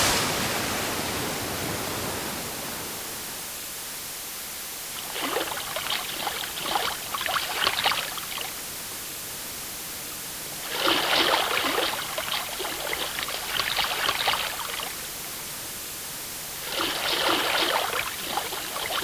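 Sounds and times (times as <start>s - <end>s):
steady wash of noise: 0.0s - 5.0s
low steady hiss: 0.0s - 19.0s
water splashing and lapping: 5.0s - 8.7s, 10.6s - 15.1s, 16.5s - 19.0s.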